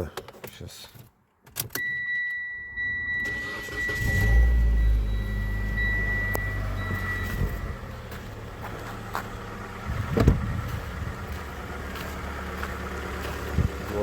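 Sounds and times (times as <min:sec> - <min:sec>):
car engine cranking and idling: 0:01.6 - 0:14.0
high electronic beep: 0:01.8 - 0:07.8.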